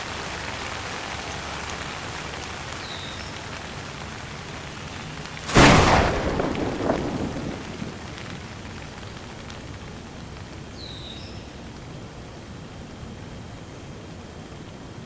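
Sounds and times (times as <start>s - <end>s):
steady rain: 0.0s - 15.0s
thunderclap rumbling: 5.4s - 9.6s.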